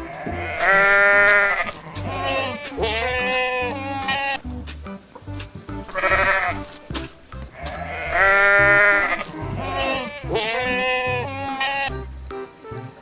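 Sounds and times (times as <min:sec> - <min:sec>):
livestock bleating: 0:00.0 - 0:04.5, 0:07.6 - 0:12.1
background music: 0:00.0 - 0:13.0.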